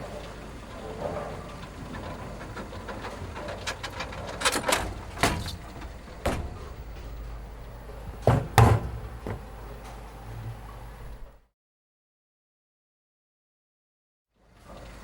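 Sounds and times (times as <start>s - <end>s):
steady low hum: 0.0s - 11.5s
sharp knocks and bangs: 5.2s - 7.3s, 8.0s - 9.6s.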